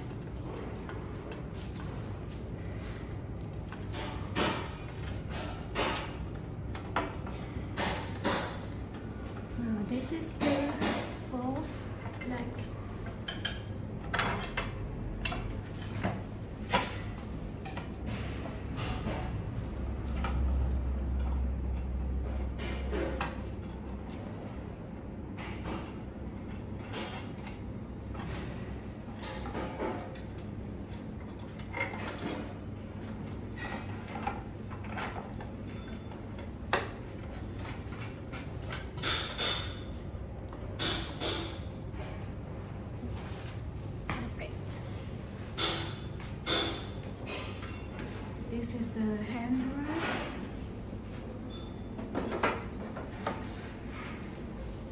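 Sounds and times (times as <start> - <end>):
clicks and knocks of chair parts: 13.0 - 24.3.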